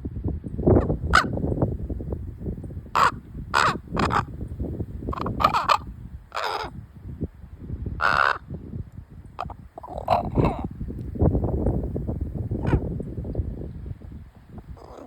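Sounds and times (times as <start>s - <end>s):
young raven cawing: 0.8s - 1.4s, 3.0s - 4.4s, 5.1s - 6.8s, 8.0s - 8.5s, 9.4s - 10.7s, 14.8s - 15.0s.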